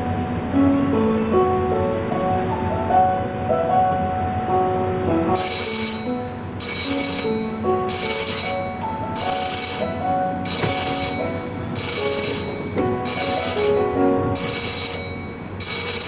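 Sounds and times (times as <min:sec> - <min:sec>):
background music: 0:00.2 - 0:16.0
level crossing alarm bell: 0:05.4 - 0:16.0.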